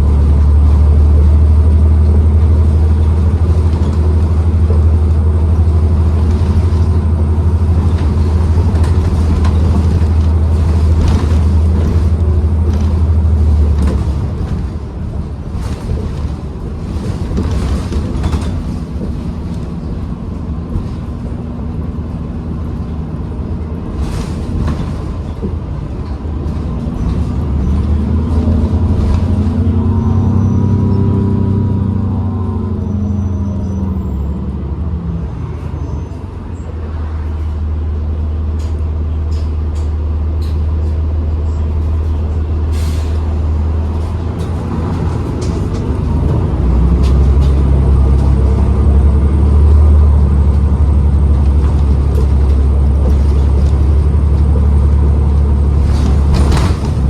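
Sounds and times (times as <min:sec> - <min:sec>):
bus drivetrain and road rumble: 0:00.0 - 0:57.0
rattles: 0:50.5 - 0:57.0.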